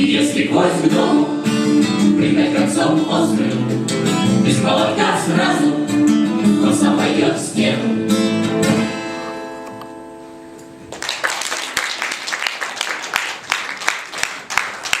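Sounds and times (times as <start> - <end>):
audience applause: 10.9 - 15.0.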